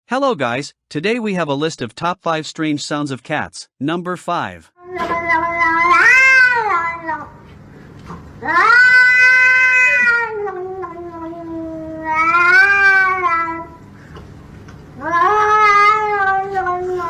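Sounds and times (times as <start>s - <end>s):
cat calling: 4.8s - 7.3s, 8.4s - 13.8s, 15.0s - 17.0s.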